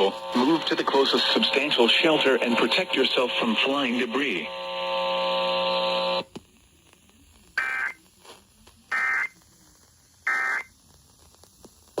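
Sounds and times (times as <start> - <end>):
two-tone digital data bursts: 10.3 - 10.7.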